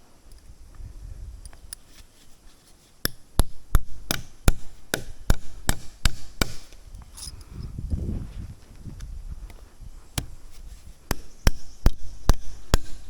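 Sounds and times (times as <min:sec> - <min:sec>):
tool chopping wood: 0:03.0 - 0:06.8, 0:10.2 - 0:13.0.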